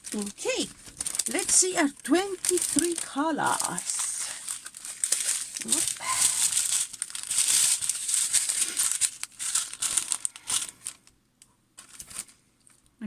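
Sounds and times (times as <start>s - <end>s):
plastic packaging crinkling: 0.0s - 11.2s, 11.8s - 12.9s.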